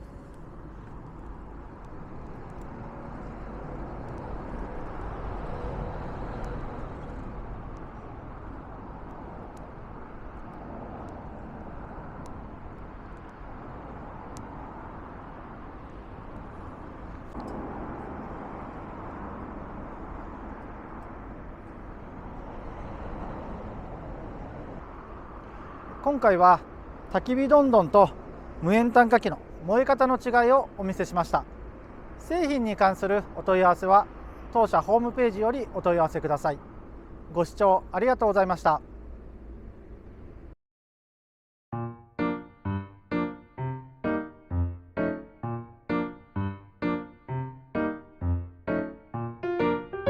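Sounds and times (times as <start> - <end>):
straw burning with rushing noise: 0.0 - 5.2.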